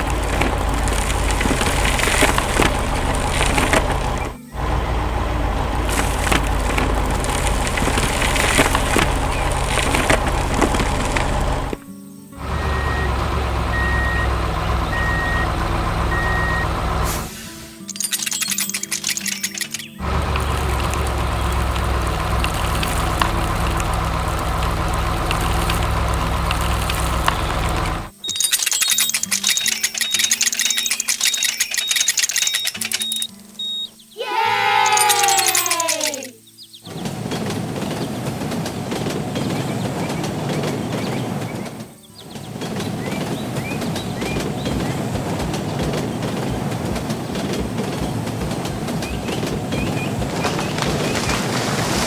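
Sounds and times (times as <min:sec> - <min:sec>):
heavy machine engine running: 0:00.0 - 0:11.8, 0:12.4 - 0:33.3, 0:36.9 - 0:52.0
cracking and crunching clicks: 0:00.0 - 0:11.9, 0:17.8 - 0:33.4, 0:34.8 - 0:36.4, 0:41.6 - 0:52.0
music with high beep: 0:12.6 - 0:15.5, 0:16.1 - 0:20.0, 0:28.2 - 0:34.0
light clinks: 0:17.8 - 0:33.4, 0:34.8 - 0:36.4.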